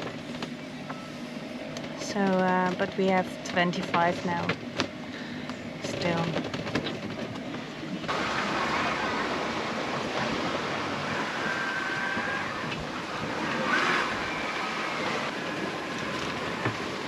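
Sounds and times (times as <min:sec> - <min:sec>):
wind and sea rushing: 0:04.1 - 0:17.0.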